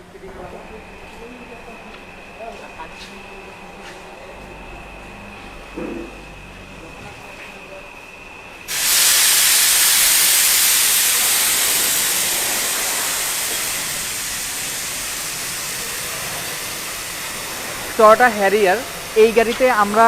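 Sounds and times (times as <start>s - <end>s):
high-pressure air jet hissing: 8.7s - 20.0s.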